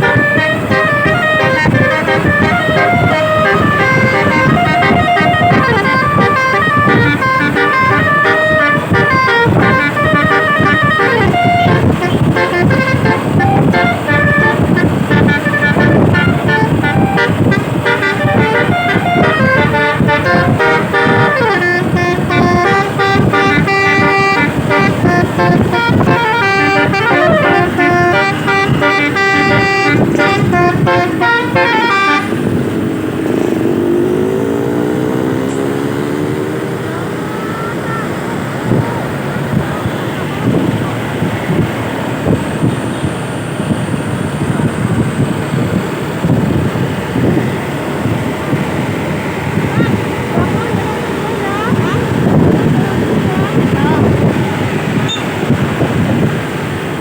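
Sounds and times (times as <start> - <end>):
large vehicle rumbling: 0.0 - 57.0
multi-tone bus horn melody: 0.0 - 57.0
wind on microphone: 0.0 - 57.0.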